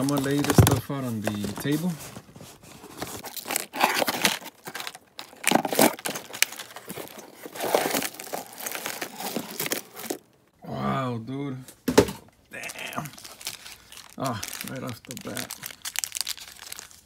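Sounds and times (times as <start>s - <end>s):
packaging crinkling and rustling: 0.0s - 10.4s, 12.6s - 17.0s
packaging tearing: 3.2s - 10.2s, 12.6s - 17.0s.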